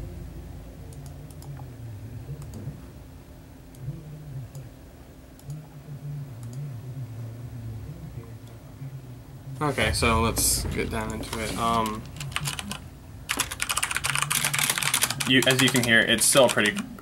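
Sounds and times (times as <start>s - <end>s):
low hum: 0.0s - 15.4s
computer mouse clicking: 11.1s - 16.9s.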